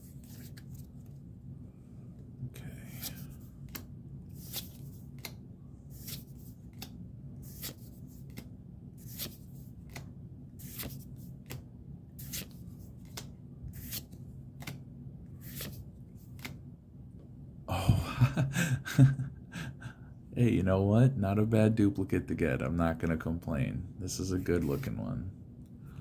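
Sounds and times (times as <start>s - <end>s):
steady low hum: 0.0s - 26.0s
cards swishing off a stack: 2.9s - 11.6s, 15.4s - 16.6s.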